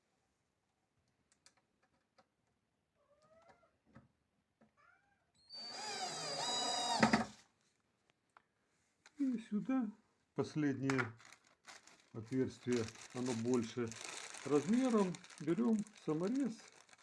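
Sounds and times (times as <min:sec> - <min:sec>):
cordless drill motor whine: 0:05.5 - 0:07.2.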